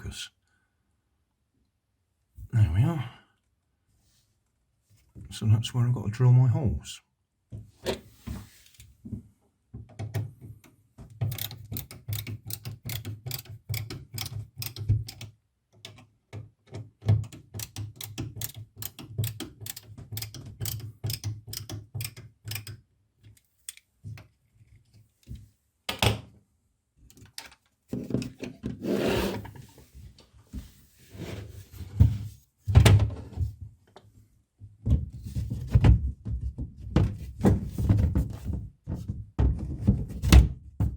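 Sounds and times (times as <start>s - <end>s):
clicks and knocks of hand work: 9.0s - 26.4s, 27.0s - 28.8s
wooden thunks: 34.8s - 40.9s.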